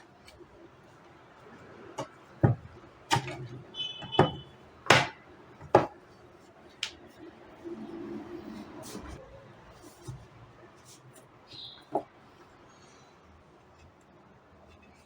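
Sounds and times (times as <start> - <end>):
hard objects knocking: 1.9 - 6.0.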